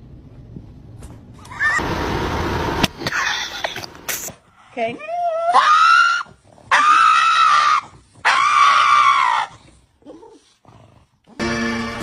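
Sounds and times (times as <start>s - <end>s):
animal screaming: 5.2s - 9.6s.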